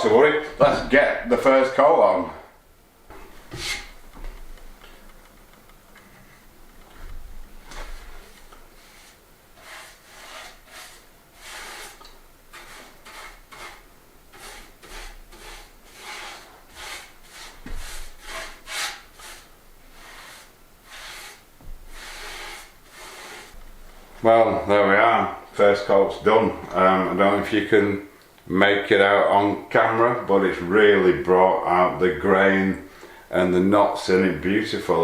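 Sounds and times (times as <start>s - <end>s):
paintbrush scrubbing on wood: 7.8s - 23.6s.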